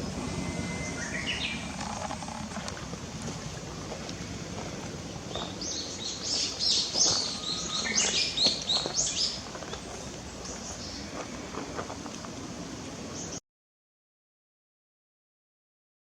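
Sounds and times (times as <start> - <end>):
songbird chirping: 0.0 - 2.6, 5.1 - 11.3
outdoor background hum: 0.0 - 13.4.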